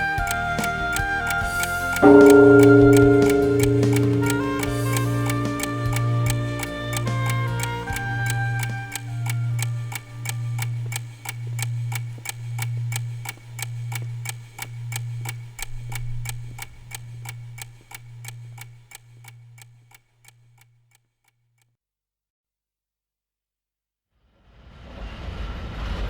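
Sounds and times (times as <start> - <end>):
low pulsing hum: 0.0 - 18.9
clock-like ticking: 0.0 - 21.1.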